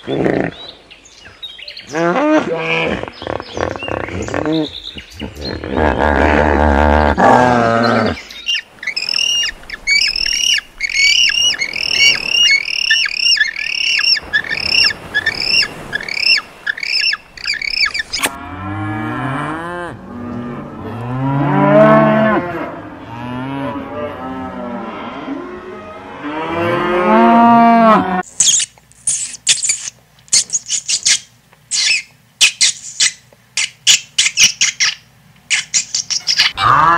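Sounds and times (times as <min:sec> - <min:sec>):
high repeated bird calls: 0:07.8 - 0:18.3, 0:28.4 - 0:36.7
cattle mooing: 0:18.4 - 0:28.2.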